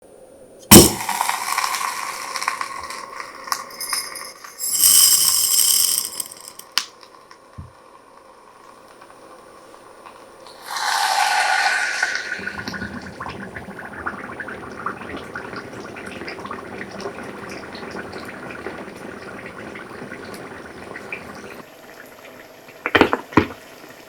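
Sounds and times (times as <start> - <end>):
sharp pops: 0.7 - 3.8
hot ball hissing and crackling: 0.7 - 7.1, 10.5 - 12.8.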